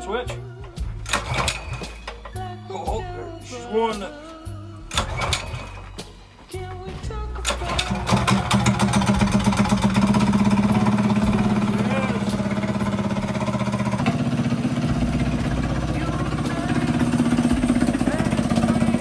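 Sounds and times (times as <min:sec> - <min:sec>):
small engine running: 0:01.0 - 0:02.4, 0:04.9 - 0:06.1, 0:07.4 - 0:19.0.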